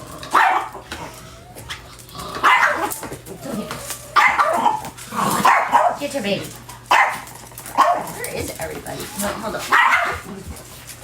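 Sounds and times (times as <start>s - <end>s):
dogs barking: 0.2s - 1.2s, 2.2s - 6.2s, 6.8s - 8.4s, 9.2s - 10.6s.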